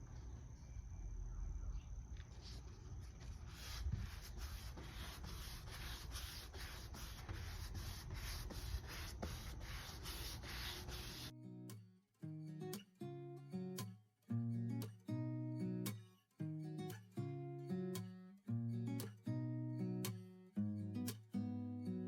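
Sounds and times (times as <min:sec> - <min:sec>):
hand rubbing furniture surface: 0:02.3 - 0:11.3.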